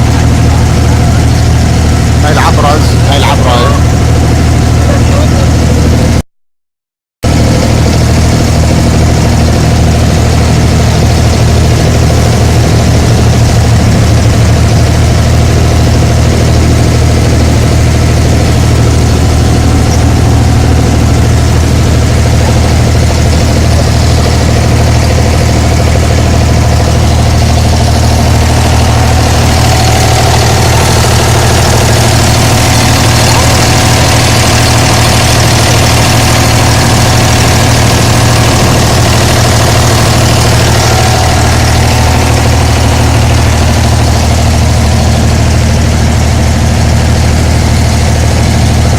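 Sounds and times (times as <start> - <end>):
boat diesel engine running: 0.0 - 6.2, 7.2 - 48.9.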